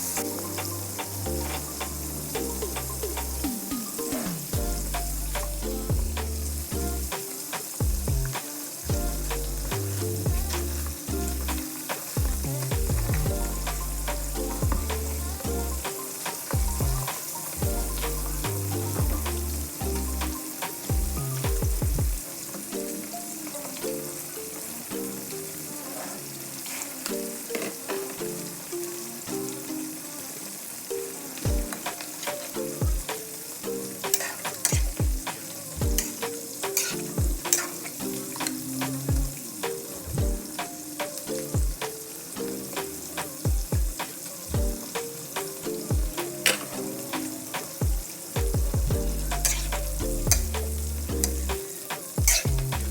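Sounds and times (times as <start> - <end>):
background music: 0.0 - 52.9
food sizzling in a frying pan: 0.0 - 52.9
utensil clicking against pan: 49.4 - 52.9.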